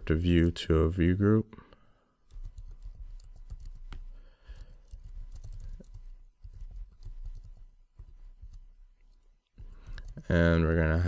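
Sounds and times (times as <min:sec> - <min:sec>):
typing on computer keyboard: 0:02.2 - 0:08.6.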